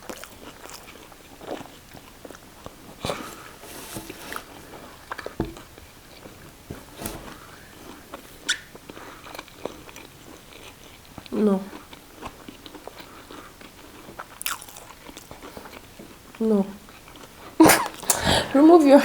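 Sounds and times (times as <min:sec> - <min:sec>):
person chewing food: 0:00.0 - 0:18.5.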